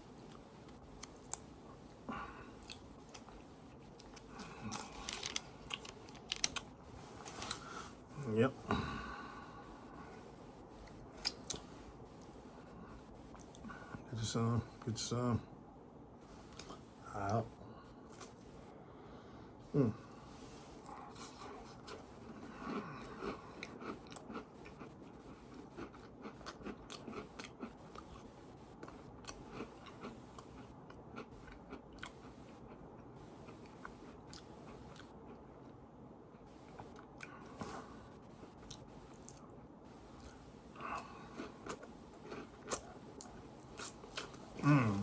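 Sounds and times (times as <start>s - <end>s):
person chewing food: 0.2s - 14.0s, 16.4s - 17.0s, 20.1s - 45.0s
food crunching: 2.2s - 7.8s, 20.8s - 35.4s, 40.1s - 45.0s.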